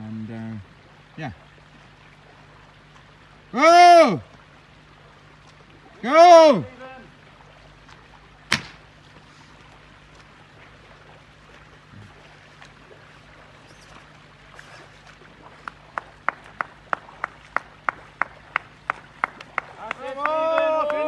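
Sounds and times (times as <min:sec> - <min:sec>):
sharp slap: 0:08.5 - 0:08.8
person clapping hands: 0:15.7 - 0:21.0.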